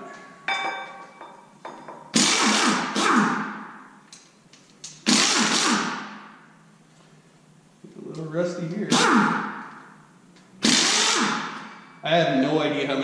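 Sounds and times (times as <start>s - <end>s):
impact wrench bursts: 2.1s - 3.8s, 5.0s - 6.4s, 8.9s - 9.9s, 10.6s - 11.9s.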